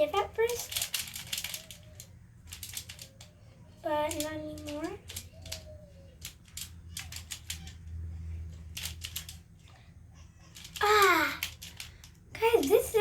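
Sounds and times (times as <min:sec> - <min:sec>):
puzzle pieces clicking: 0:00.2 - 0:03.4, 0:04.0 - 0:08.0, 0:08.7 - 0:09.4, 0:10.5 - 0:13.0.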